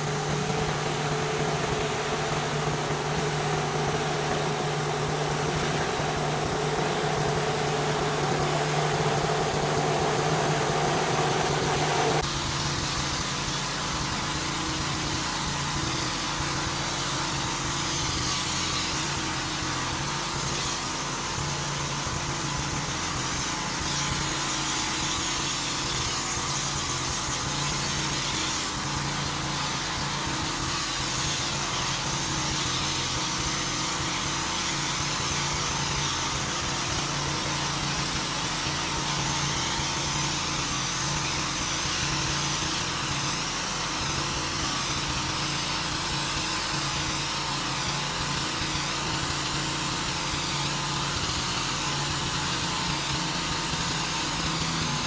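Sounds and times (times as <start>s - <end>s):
high-pressure water spray hissing: 0.0s - 12.2s
pressure washer running: 0.0s - 55.0s.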